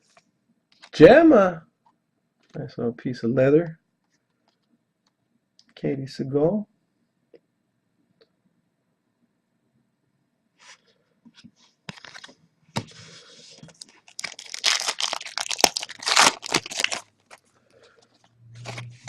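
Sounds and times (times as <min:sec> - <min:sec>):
foil wrapper tearing and crinkling: 0:13.6 - 0:17.4.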